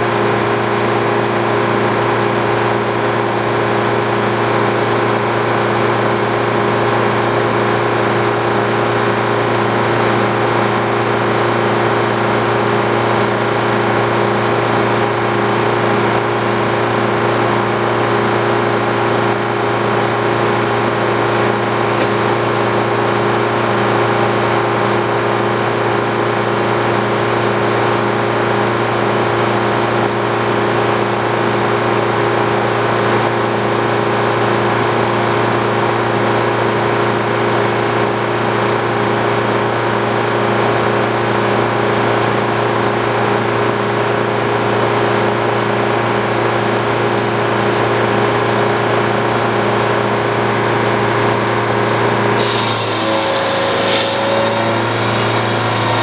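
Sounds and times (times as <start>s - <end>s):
sawmill engine drone: 52.4s - 56.0s.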